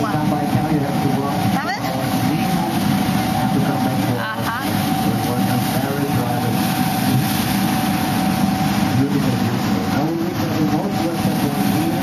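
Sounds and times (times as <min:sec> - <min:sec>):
boat engine running: 0:00.0 - 0:12.0.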